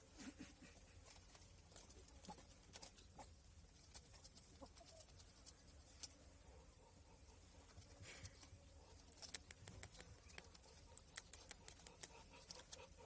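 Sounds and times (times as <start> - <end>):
faint clicks and ticks: 7.7 - 13.0.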